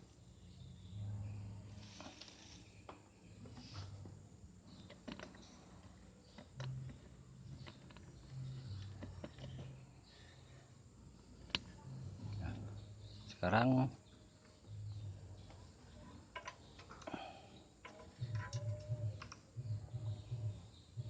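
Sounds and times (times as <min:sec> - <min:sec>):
small metal parts clicking: 0:17.8 - 0:19.4.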